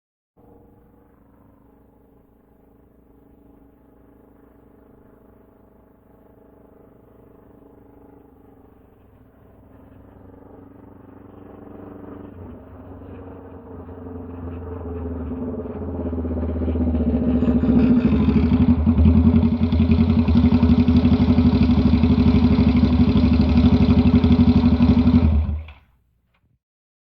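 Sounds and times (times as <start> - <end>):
motorcycle engine running: 2.1 - 25.8.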